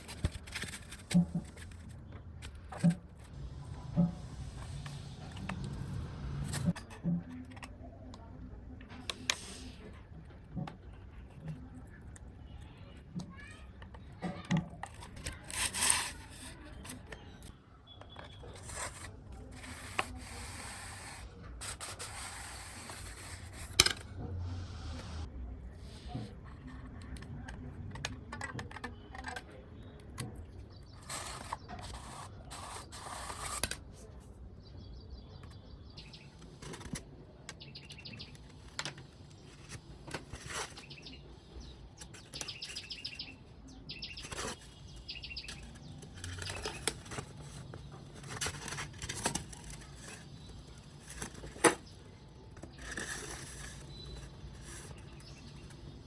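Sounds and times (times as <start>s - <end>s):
hands working foam and tools: 0.0s - 34.4s, 35.4s - 56.0s.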